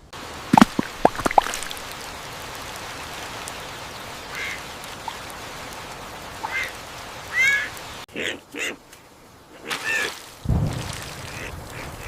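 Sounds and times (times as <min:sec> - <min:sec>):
steady hiss: 0:00.0 - 0:08.1.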